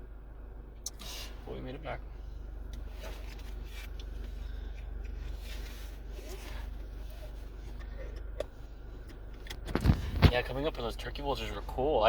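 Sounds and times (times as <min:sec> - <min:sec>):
steady low hum: 0:00.0 - 0:12.0
soft rustling and handling: 0:02.4 - 0:08.2.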